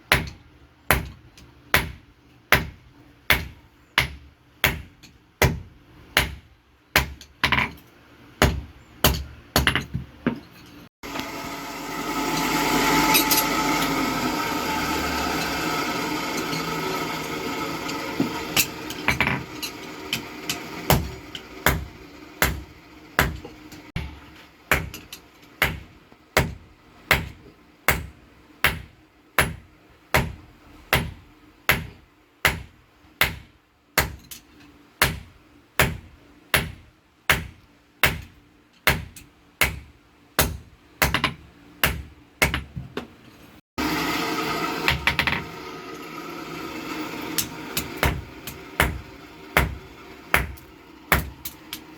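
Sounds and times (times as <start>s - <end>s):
hammer striking steel on anvil: 11.0s - 30.4s, 47.4s - 51.9s.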